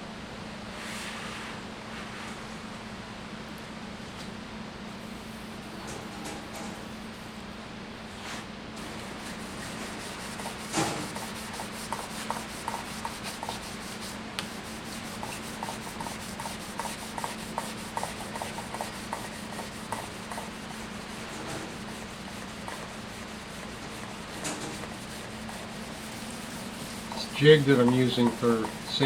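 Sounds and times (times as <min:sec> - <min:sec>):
wet sandpaper rubbing wood: 0:09.0 - 0:29.0.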